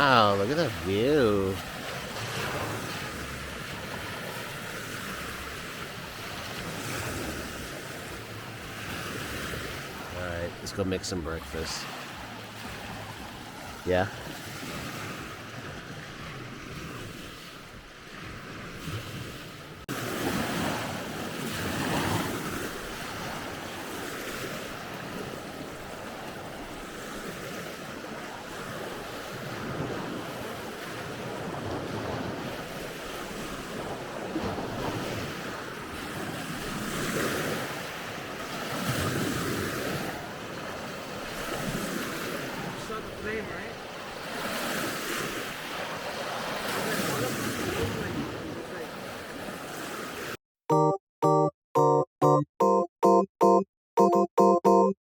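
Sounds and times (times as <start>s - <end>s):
wind gusts on microphone: 11.5s - 50.4s.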